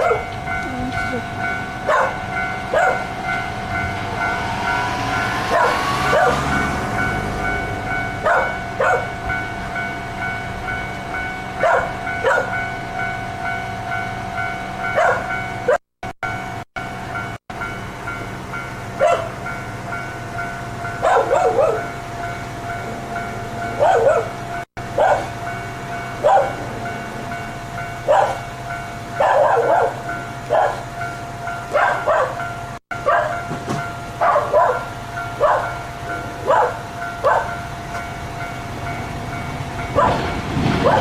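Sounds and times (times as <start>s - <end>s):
dog barking: 0.0s - 0.3s, 1.8s - 3.1s, 5.5s - 6.5s, 8.2s - 9.1s, 11.6s - 12.6s, 15.0s - 15.8s, 19.0s - 19.4s, 21.0s - 21.9s, 23.8s - 25.4s, 26.2s - 26.7s, 28.1s - 28.4s, 29.2s - 30.9s, 31.7s - 32.4s, 33.0s - 33.4s, 34.2s - 35.8s, 36.4s - 37.6s, 40.0s - 41.0s
steady high-pitched tone: 0.2s - 11.4s.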